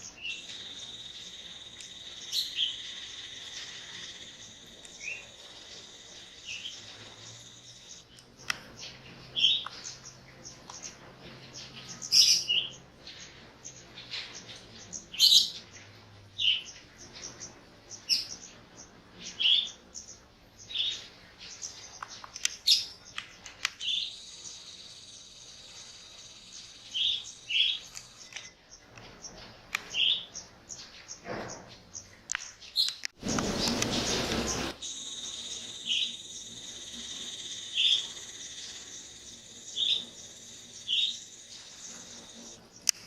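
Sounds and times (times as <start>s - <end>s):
loud steady hiss: 0.0s - 9.5s, 23.8s - 28.3s, 33.2s - 43.0s
steady high whine: 0.0s - 12.1s, 33.2s - 43.0s
birds chirping: 0.0s - 43.0s.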